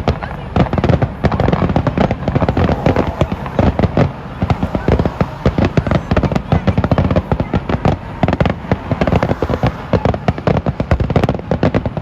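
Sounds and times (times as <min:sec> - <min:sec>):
fireworks bangs and cracks: 0:00.0 - 0:12.0.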